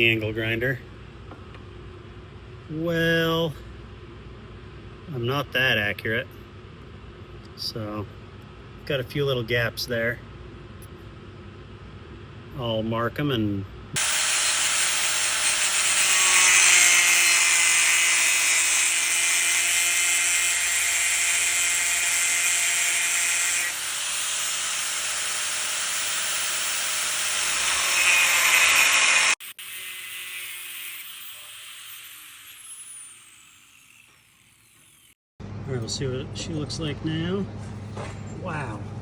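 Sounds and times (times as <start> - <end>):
angle grinder cutting steel: 14.0 - 35.2.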